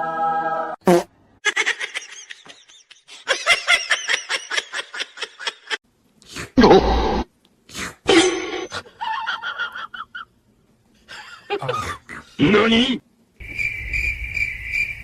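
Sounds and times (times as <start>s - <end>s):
person laughing: 1.4s - 5.8s, 11.1s - 12.1s.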